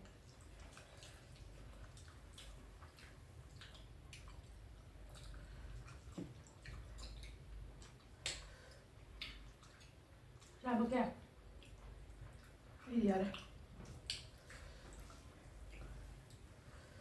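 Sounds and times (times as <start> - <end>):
wet mouth clicks of chewing: 0.0 - 10.6, 11.5 - 16.4.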